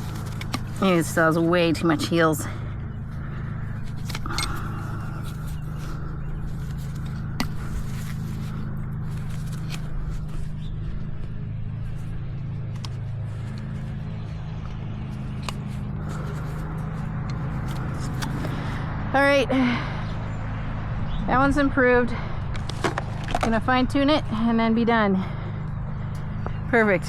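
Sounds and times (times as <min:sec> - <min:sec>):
angle grinder grinding hoof: 0:00.0 - 0:19.0.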